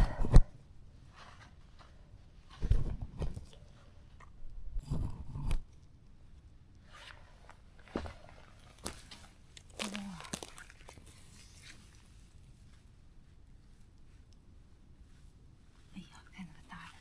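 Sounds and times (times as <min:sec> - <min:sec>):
rustling and crunching in leaf litter: 0:08.7 - 0:12.2.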